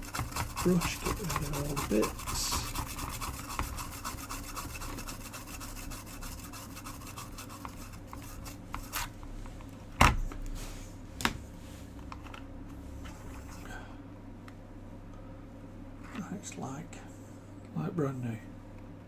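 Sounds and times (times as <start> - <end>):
brush scrubbing circuit board: 0.0 - 9.2.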